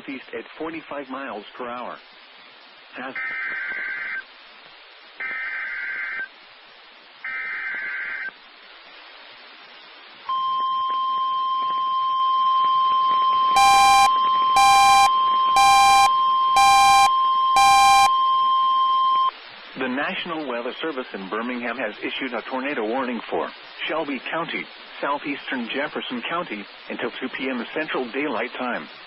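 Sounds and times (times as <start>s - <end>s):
screeching data tones: 3.0s - 4.3s, 5.2s - 6.3s, 7.2s - 8.4s, 10.3s - 19.3s
loud electronic beeps: 10.3s - 19.3s
steady single-tone attention signal: 10.3s - 19.3s.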